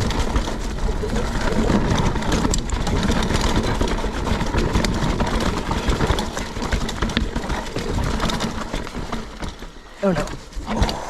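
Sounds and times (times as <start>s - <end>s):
bike rattling over rocks: 0.0s - 11.0s
bike tyres rolling on trail: 0.0s - 11.0s.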